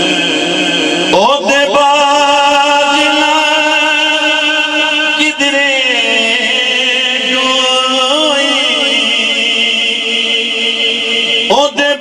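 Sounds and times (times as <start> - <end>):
man singing a long note: 0.0 - 12.0.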